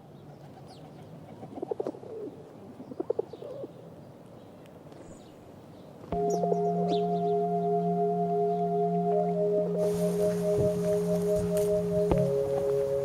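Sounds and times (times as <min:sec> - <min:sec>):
steady ringing music tone: 0:06.2 - 0:13.0.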